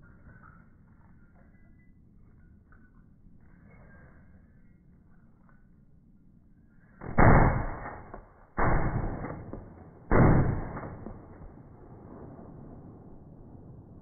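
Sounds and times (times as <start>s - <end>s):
gunshots echoing: 7.0s - 14.0s.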